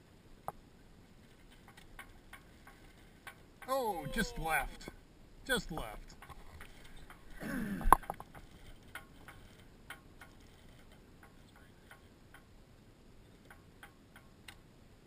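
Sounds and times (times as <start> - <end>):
faint irregular clicks and ticks: 0.1 - 3.8, 4.8 - 15.0.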